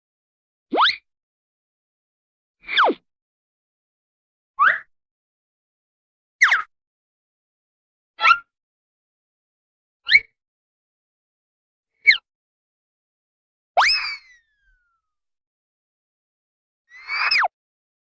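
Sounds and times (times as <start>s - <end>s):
cartoon whistle zips: 0.7s - 1.0s, 13.8s - 14.3s, 17.0s - 17.5s.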